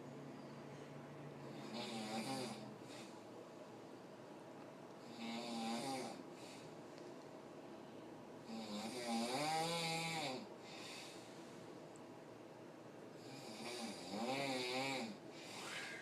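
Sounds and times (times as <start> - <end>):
man snoring: 1.5 - 3.1, 5.0 - 6.2, 8.4 - 10.5, 13.2 - 15.8
faint breath: 10.6 - 11.7, 15.3 - 16.0.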